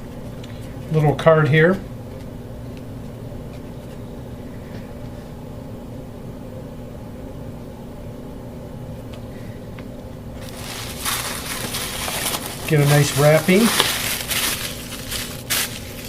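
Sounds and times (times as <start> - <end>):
low background hum: 0.0 - 16.0
wrapping paper crinkling: 10.4 - 16.0.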